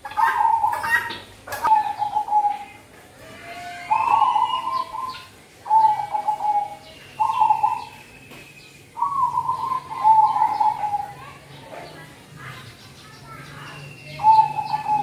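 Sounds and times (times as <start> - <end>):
dove cooing: 0.0 - 2.8, 3.6 - 8.0, 9.0 - 11.4, 14.1 - 15.0.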